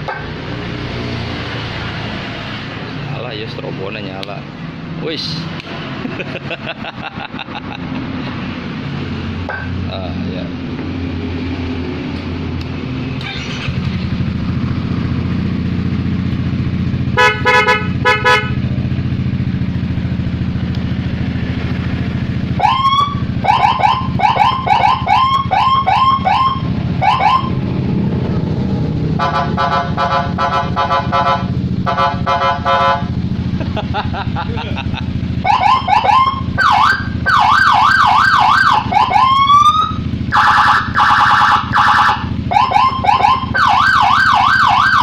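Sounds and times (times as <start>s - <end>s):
motorcycle engine idling: 13.2s - 27.6s, 29.2s - 37.4s, 38.0s - 44.9s
short horn blasts: 17.2s - 18.6s, 29.2s - 33.1s
quick rising siren chirps: 22.6s - 27.6s, 35.4s - 45.0s
electronic siren tones: 22.6s - 27.7s, 35.4s - 45.0s.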